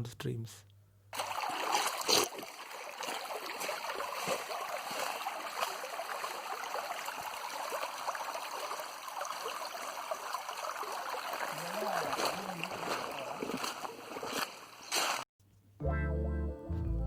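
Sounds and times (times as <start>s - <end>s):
stream flowing over rocks: 1.2s - 14.8s.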